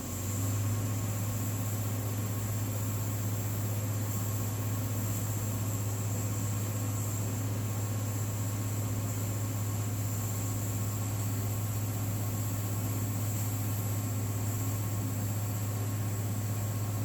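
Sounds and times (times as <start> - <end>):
low hum with high whine: 0.0 - 17.0.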